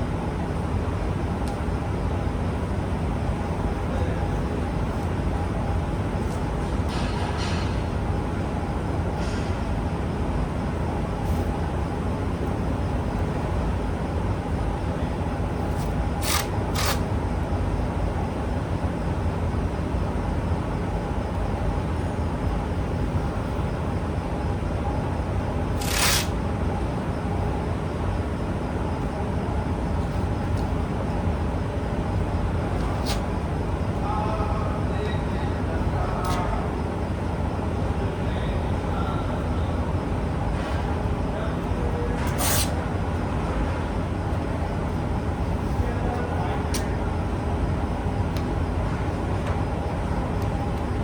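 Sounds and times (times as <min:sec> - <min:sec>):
low mechanical hum: 0:00.0 - 0:51.0.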